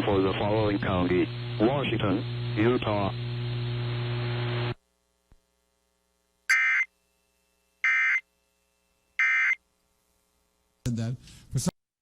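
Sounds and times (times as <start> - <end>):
radio broadcast hum and hiss: 0.0 - 4.8.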